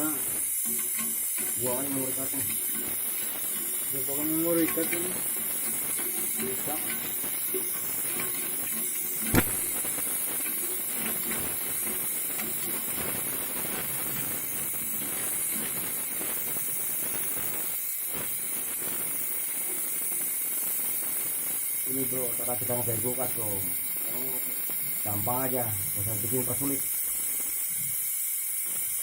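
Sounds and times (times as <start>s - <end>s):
gas hissing: 0.0s - 29.0s
sharp click: 9.3s - 10.0s.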